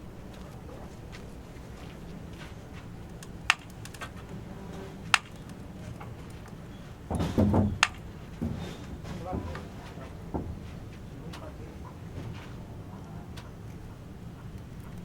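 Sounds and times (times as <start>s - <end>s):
sharp knocks: 3.5s - 4.3s, 5.1s - 5.5s, 7.1s - 8.6s.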